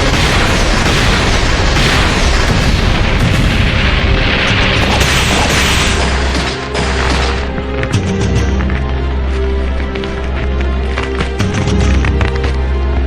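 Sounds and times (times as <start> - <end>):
explosion-like booms and blasts: 0.0 - 7.5
soundtrack music: 0.0 - 13.0.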